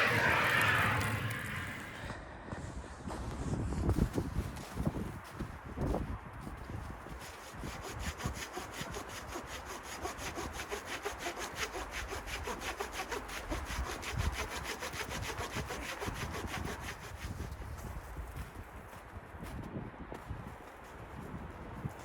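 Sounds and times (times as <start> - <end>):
hand saw cutting wood: 7.0 - 17.5.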